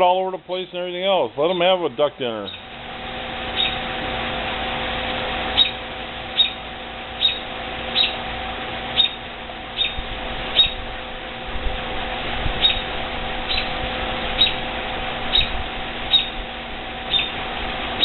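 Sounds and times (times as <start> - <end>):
steady low hum: 0.0 - 18.0
bird chirping: 2.5 - 2.7, 3.6 - 3.8, 5.6 - 5.8, 6.4 - 6.6, 7.2 - 8.2, 9.0 - 9.2, 9.8 - 10.8, 12.6 - 12.8, 13.5 - 13.7, 16.1 - 16.4, 17.1 - 17.4.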